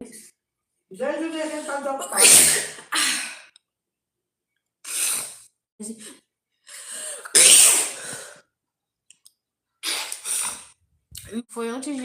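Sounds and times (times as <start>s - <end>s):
woman sneezing: 1.6s - 3.4s, 7.2s - 8.4s
breath before sneeze: 4.9s - 5.5s, 6.7s - 8.5s, 9.8s - 10.8s.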